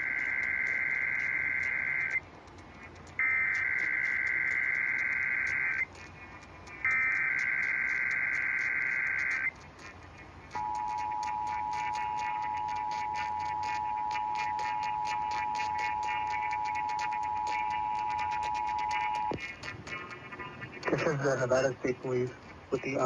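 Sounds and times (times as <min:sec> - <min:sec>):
digital data screech bursts: 0:00.0 - 0:02.2, 0:03.2 - 0:05.9, 0:06.8 - 0:09.6, 0:10.6 - 0:20.2
two-tone attention signal: 0:10.6 - 0:19.4.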